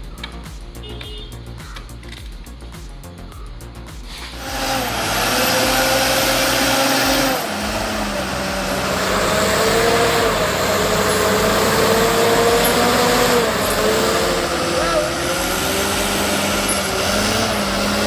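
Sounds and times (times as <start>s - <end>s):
heavy machine engine under load: 4.6s - 18.0s.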